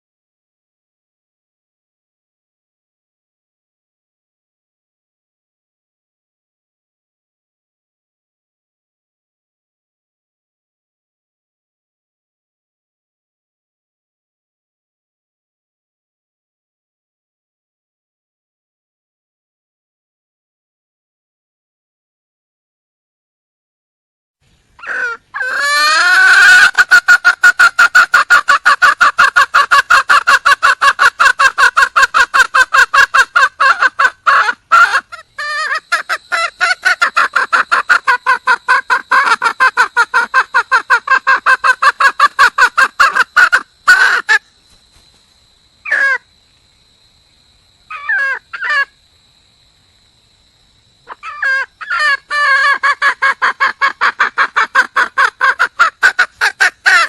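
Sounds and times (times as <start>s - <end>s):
hen clucking rapidly: 24.8s - 44.4s, 45.9s - 46.2s, 47.9s - 48.9s, 51.1s - 57.0s.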